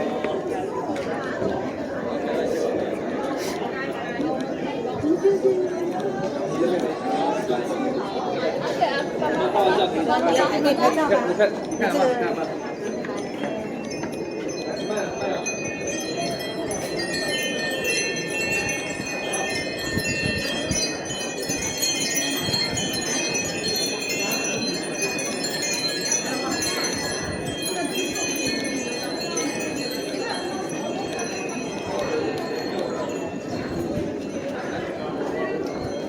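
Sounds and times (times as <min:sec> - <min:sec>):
crowd murmur: 0:00.0 - 0:36.0
wind chimes ringing: 0:09.8 - 0:36.0.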